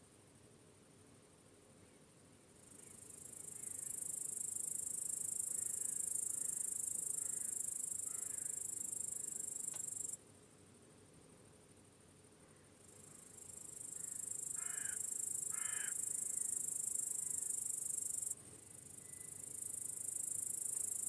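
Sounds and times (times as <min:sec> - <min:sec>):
faint low hiss: 0:00.0 - 0:21.0
crickets trilling: 0:02.6 - 0:10.2, 0:12.8 - 0:21.0.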